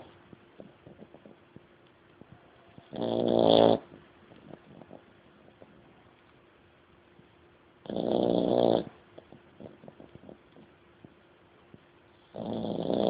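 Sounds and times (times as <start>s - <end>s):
dog snoring: 2.8s - 5.0s, 7.8s - 10.7s, 12.2s - 13.0s.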